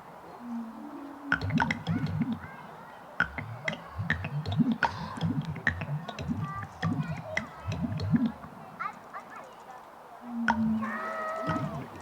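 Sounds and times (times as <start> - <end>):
sharp clicks: 1.2 - 2.5, 3.2 - 9.7
low pulsing music: 1.3 - 2.4.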